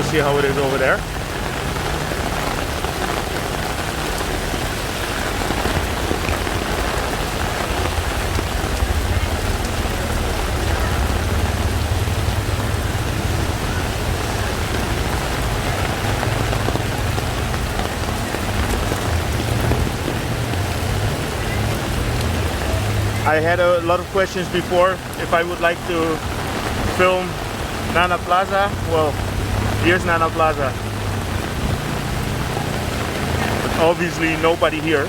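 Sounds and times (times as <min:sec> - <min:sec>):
heavy rain on street: 0:00.0 - 0:35.0
low rumble: 0:05.6 - 0:23.3.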